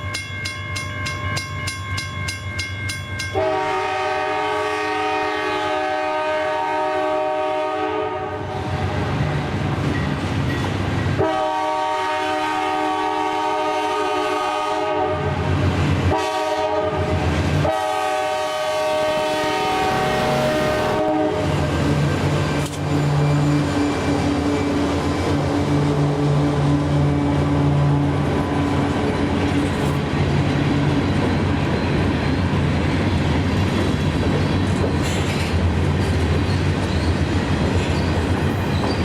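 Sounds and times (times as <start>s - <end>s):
passing train rumble: 0.0s - 39.0s
locomotive air horn chord: 3.3s - 9.1s, 11.2s - 15.5s, 16.1s - 21.6s.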